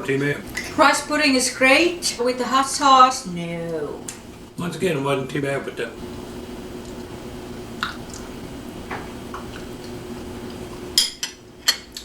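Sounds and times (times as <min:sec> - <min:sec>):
faint steady hum: 0:00.0 - 0:12.0
eating clicks and smacks: 0:07.8 - 0:08.3.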